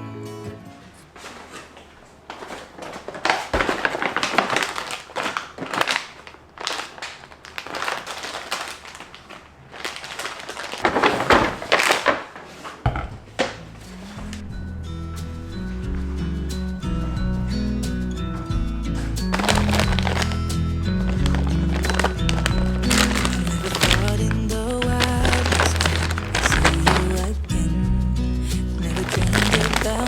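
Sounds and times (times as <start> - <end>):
plastic bags crinkling: 1.0 - 14.4, 19.2 - 27.7, 28.4 - 30.0.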